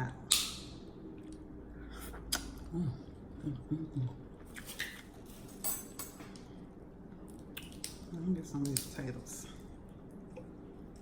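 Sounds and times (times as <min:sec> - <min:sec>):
utensils clinking on dishes: 0:04.7 - 0:06.4.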